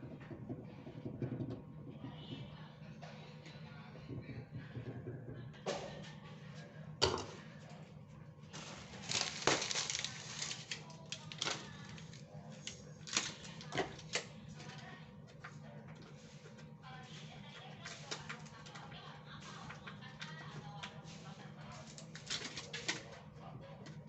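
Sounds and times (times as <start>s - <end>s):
steady low hum: 0.0s - 24.0s
utensils and containers clattering: 8.6s - 14.8s, 21.7s - 23.2s.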